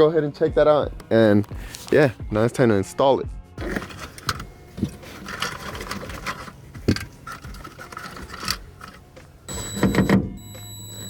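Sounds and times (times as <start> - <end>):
board clicking and scraping: 3.6 - 9.5.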